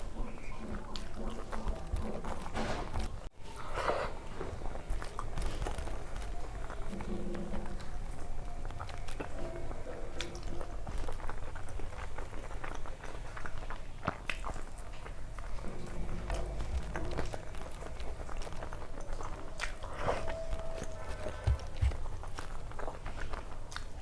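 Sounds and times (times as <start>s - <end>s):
person chewing food: 0.0s - 24.0s.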